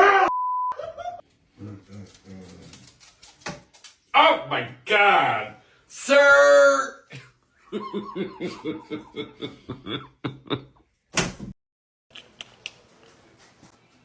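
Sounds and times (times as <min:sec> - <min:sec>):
person laughing: 0:00.8 - 0:01.8, 0:07.1 - 0:10.8.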